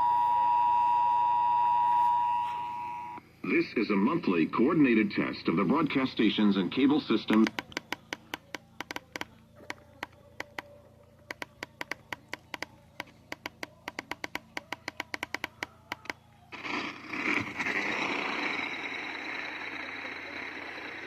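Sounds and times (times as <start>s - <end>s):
faint high whine: 0.0s - 21.0s
sharp clicks: 7.2s - 16.2s.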